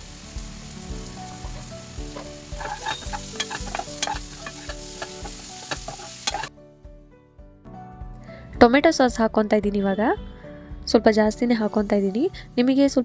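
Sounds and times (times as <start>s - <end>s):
food sizzling in hot oil: 0.0s - 6.5s
utensil scraping a pan: 1.2s - 6.5s.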